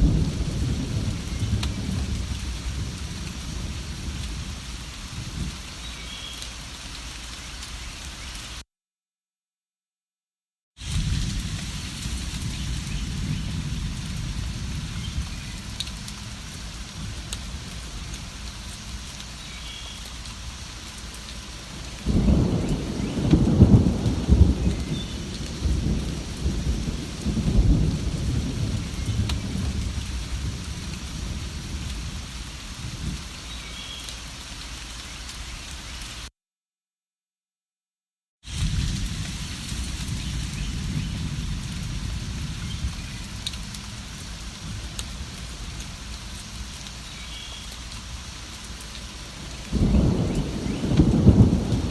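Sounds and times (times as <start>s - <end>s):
thunder rumbling: 0.0s - 5.6s, 10.8s - 19.0s, 21.7s - 33.3s, 38.5s - 46.7s, 49.3s - 51.9s
steady rainfall: 0.0s - 8.6s, 10.8s - 36.3s, 38.4s - 51.9s.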